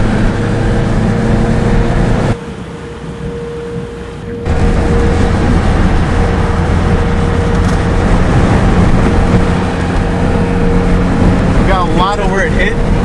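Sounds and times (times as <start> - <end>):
car engine and road rumble: 0.0 - 13.0
loud rushing wind noise: 0.0 - 13.0.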